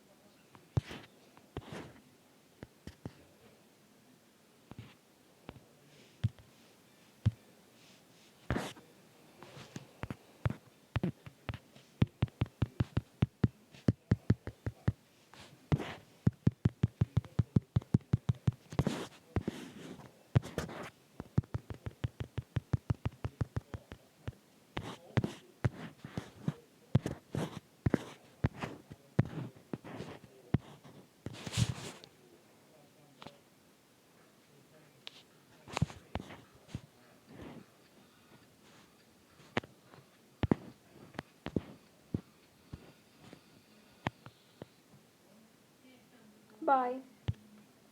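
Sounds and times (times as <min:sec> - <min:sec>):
taps on a touchscreen: 0:06.2 - 0:06.5, 0:10.0 - 0:15.0, 0:15.7 - 0:19.6, 0:20.4 - 0:24.0, 0:24.8 - 0:30.0, 0:40.4 - 0:41.8.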